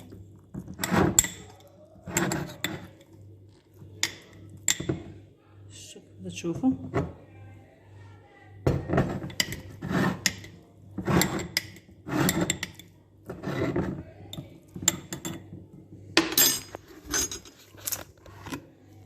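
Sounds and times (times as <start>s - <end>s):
kitchenware clinking and knocking: 0.0s - 3.2s, 3.8s - 5.2s, 6.5s - 7.2s, 8.6s - 18.1s.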